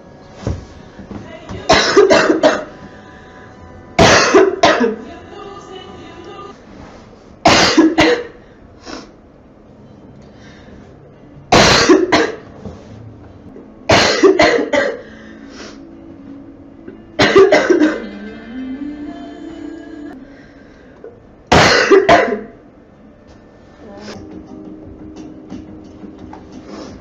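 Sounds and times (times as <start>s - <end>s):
girl coughing: 1.7s - 2.7s, 4.0s - 5.0s, 7.4s - 8.4s, 11.5s - 12.5s, 13.9s - 15.1s, 17.2s - 18.1s, 21.5s - 22.6s.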